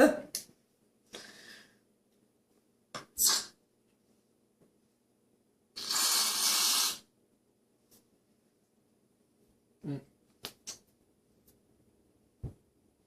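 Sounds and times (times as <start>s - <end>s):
aerosol can spraying: 5.8s - 7.0s.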